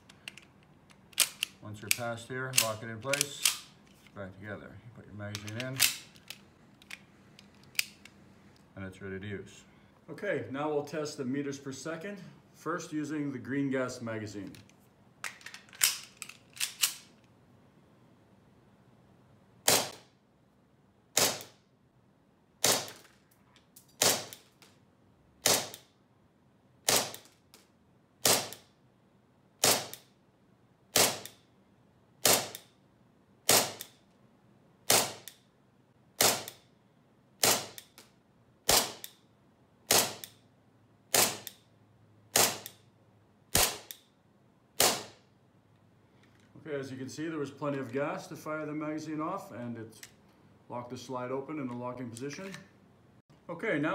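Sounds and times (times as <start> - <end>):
pistol slide cycling: 0.0 - 4.1, 5.3 - 8.2, 14.5 - 17.3
pistol slide locking open: 0.1 - 4.0, 5.3 - 8.1, 15.2 - 17.2
airsoft pistol shots: 19.6 - 20.1, 21.2 - 21.6, 22.6 - 23.0, 24.0 - 24.4, 25.4 - 25.9, 26.8 - 27.3, 28.2 - 28.7, 29.6 - 30.0, 30.9 - 31.4, 32.2 - 32.6, 33.5 - 33.9, 34.9 - 35.3, 36.2 - 36.6, 37.4 - 37.9, 38.7 - 39.1, 39.9 - 40.3, 41.1 - 41.6, 42.3 - 42.8, 43.5 - 44.0, 44.8 - 45.2.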